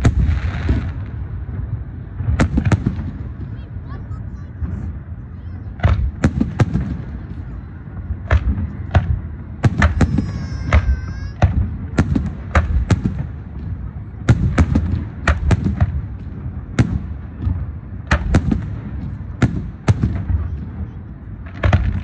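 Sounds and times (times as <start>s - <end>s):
fireworks banging and cracking: 0.0s - 22.0s
low rumble: 0.0s - 22.0s.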